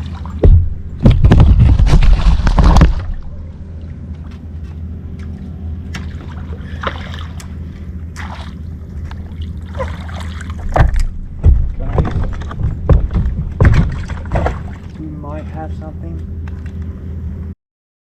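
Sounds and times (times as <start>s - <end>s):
water splashes: 0.0s - 12.6s, 13.6s - 15.2s
steady low rumble: 0.0s - 17.6s
knocks on a kayak: 0.4s - 3.0s, 10.7s - 14.6s.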